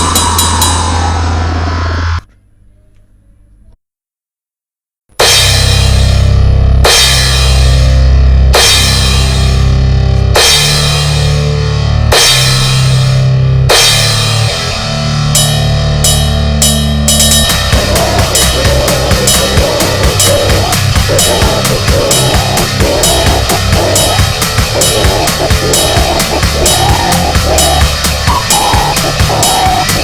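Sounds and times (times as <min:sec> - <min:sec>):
cymbal crash: 0:00.0 - 0:02.2
fast dense drumming: 0:17.2 - 0:30.0.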